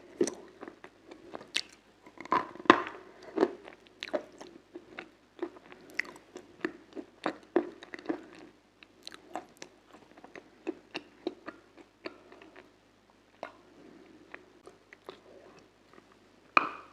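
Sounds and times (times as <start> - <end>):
crunchy food chewing: 0.0 - 12.7.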